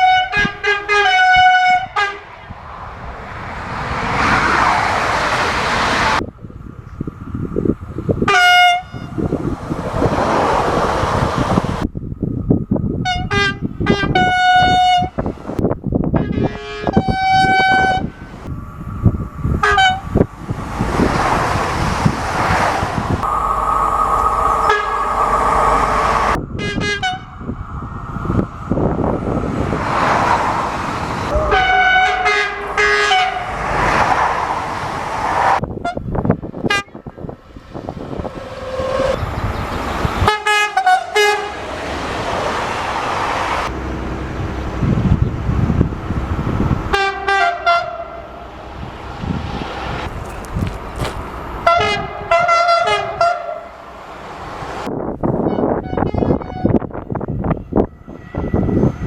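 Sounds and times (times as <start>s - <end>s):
train horn blasts: 0.0s - 2.4s, 8.3s - 9.2s, 13.0s - 15.2s, 16.2s - 18.2s, 19.6s - 20.1s, 24.5s - 26.0s, 26.6s - 27.4s, 31.3s - 33.6s, 40.2s - 41.6s, 46.9s - 48.4s, 51.6s - 53.8s, 55.4s - 59.0s
rumble of passing trains: 0.0s - 59.0s.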